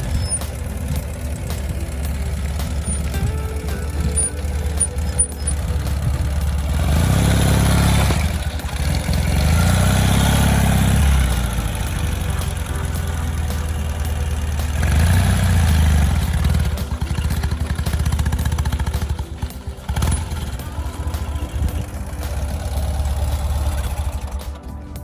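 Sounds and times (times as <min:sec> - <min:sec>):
motorcycle engine running: 0:00.0 - 0:25.0.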